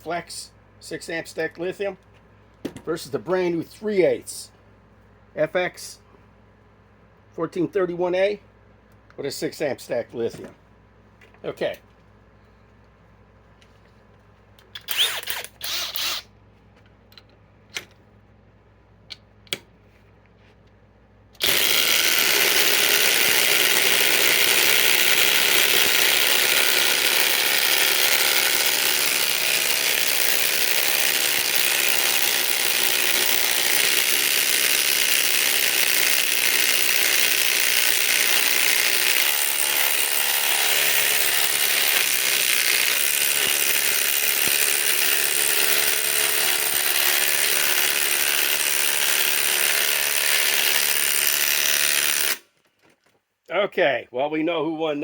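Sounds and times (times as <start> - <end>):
impact wrench hammering: 21.4 - 52.4.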